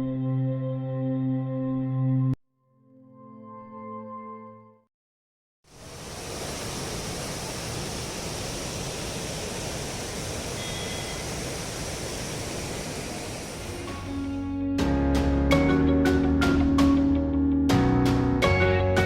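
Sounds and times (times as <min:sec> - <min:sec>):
waterfall rushing: 0:05.7 - 0:14.3.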